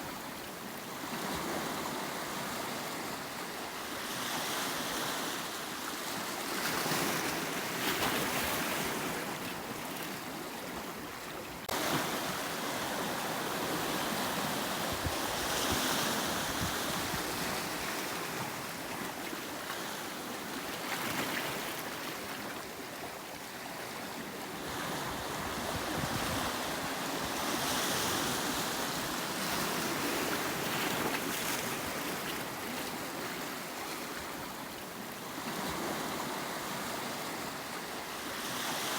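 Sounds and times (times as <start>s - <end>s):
waves breaking on rocky shore: 11.7s - 23.0s.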